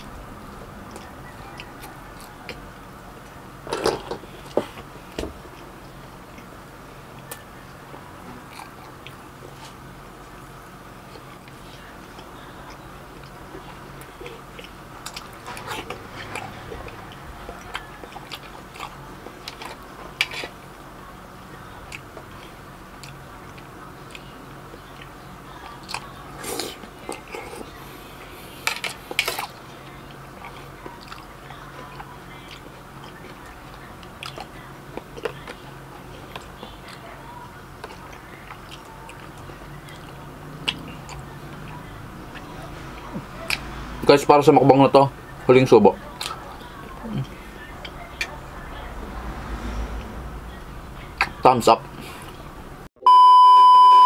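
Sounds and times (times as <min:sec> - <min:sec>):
wet chewing: 0:00.0 - 0:03.4, 0:11.0 - 0:20.8, 0:21.4 - 0:44.0.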